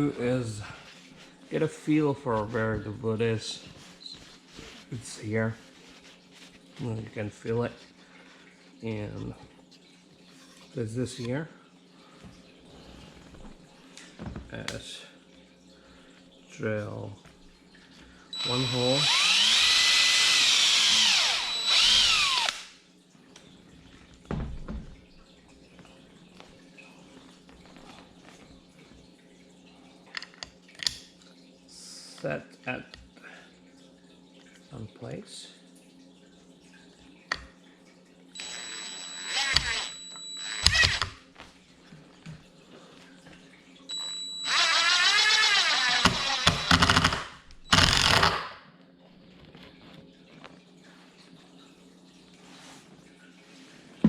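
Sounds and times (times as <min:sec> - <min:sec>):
electric drill boring into wood: 0:18.4 - 0:22.7, 0:38.4 - 0:41.1, 0:44.0 - 0:48.6.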